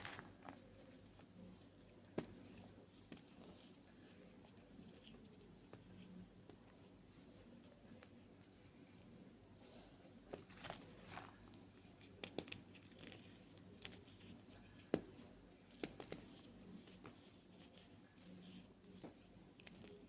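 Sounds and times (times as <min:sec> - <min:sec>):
chalk crunching and crackling: 0:00.0 - 0:03.9.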